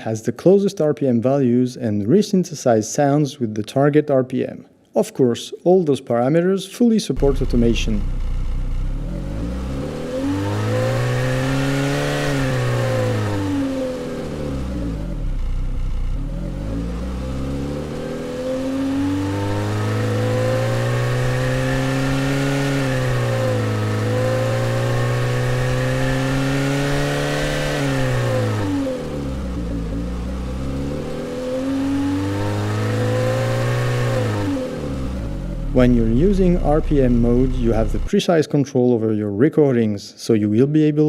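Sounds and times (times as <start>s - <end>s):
synthesized car engine revving: 7.2s - 38.1s.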